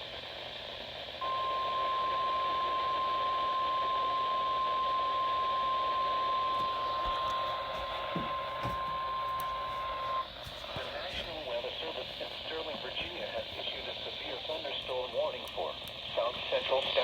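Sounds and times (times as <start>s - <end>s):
steady alarm tone: 1.2s - 17.0s
radio hiss: 6.0s - 17.0s.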